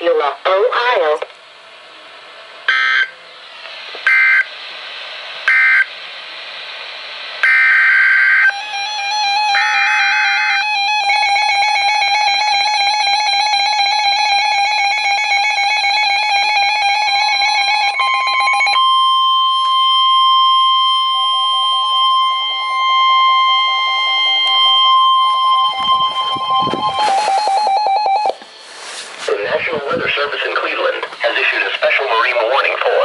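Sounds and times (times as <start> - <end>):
warbling electronic alarm: 2.7 - 3.2, 4.0 - 4.5, 5.4 - 5.9, 7.4 - 28.7
steady single-pitch alarm tone: 2.7 - 4.5, 5.4 - 5.9, 7.4 - 28.7.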